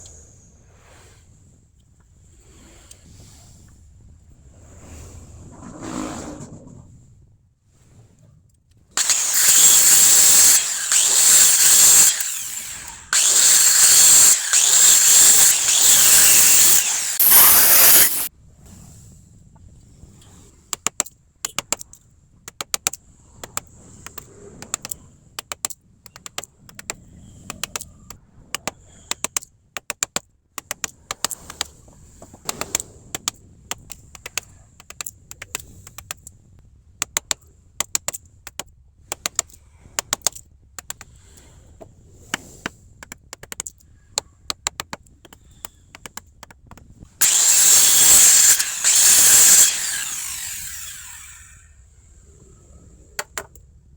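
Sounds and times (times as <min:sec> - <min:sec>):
power tool cutting wood: 0:09.0 - 0:18.3, 0:47.2 - 0:51.7.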